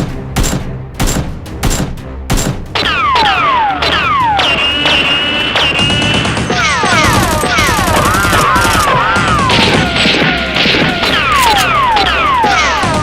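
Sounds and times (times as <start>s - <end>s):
music: 0.0s - 13.0s
falling whistling tones: 4.2s - 6.3s
rapid automatic gunfire: 4.8s - 13.0s.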